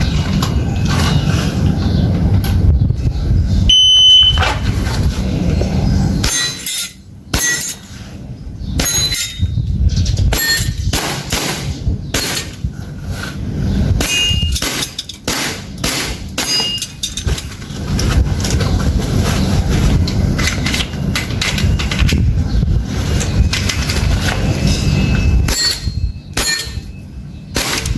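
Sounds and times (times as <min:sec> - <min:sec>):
steady low rumble: 0:00.0 - 0:27.9
airsoft pistol shots: 0:10.9 - 0:12.5.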